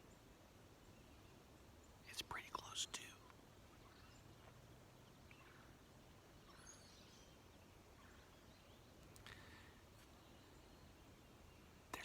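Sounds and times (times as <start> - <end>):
distant wild turkey calls: 2.0 - 7.1, 7.8 - 9.8.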